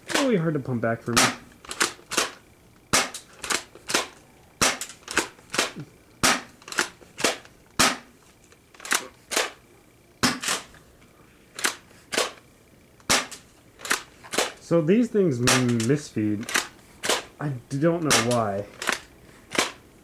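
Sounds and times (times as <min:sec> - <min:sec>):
toy shotgun pumping and firing: 0:00.1 - 0:00.4, 0:01.1 - 0:08.1, 0:08.7 - 0:09.6, 0:10.2 - 0:10.8, 0:11.6 - 0:12.4, 0:13.0 - 0:14.6, 0:15.4 - 0:17.4, 0:18.0 - 0:19.9.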